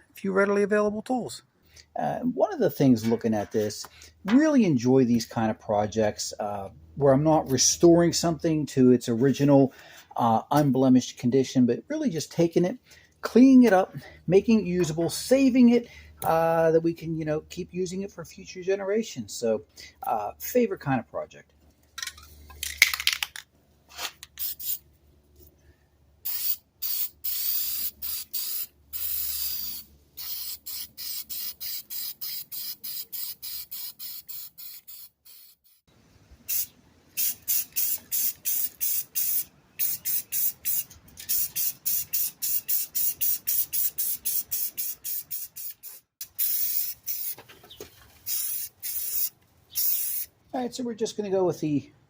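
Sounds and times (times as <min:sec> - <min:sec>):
spray can hissing bursts: 0:23.9 - 0:24.8, 0:26.2 - 0:35.8, 0:36.5 - 0:47.4, 0:48.2 - 0:50.3.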